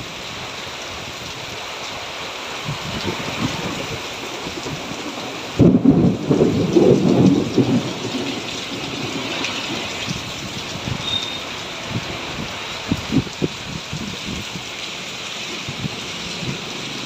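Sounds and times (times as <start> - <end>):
rain falling: 0.0 - 17.0
thunderclap rumbling: 2.6 - 14.7.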